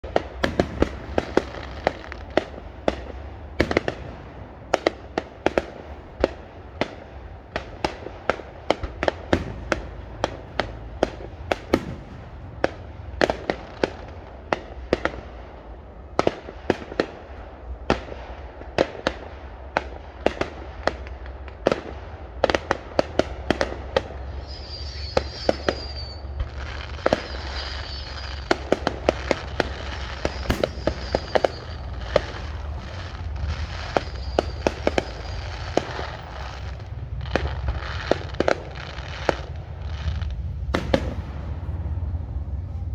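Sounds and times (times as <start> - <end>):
high crackling whistle: 0.0 - 4.0, 24.2 - 41.2
fireworks bangs: 0.0 - 42.9
low rumble: 28.9 - 42.9.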